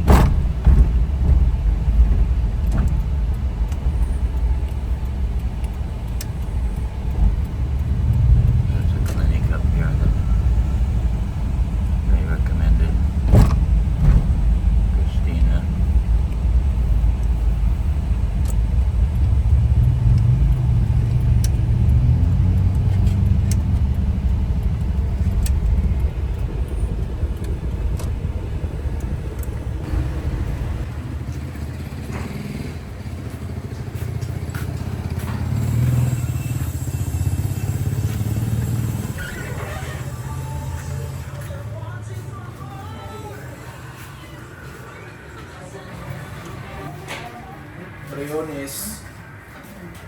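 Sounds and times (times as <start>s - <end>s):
vehicle engine and road rumble: 0.0s - 50.0s
faint clicks: 0.9s - 29.9s.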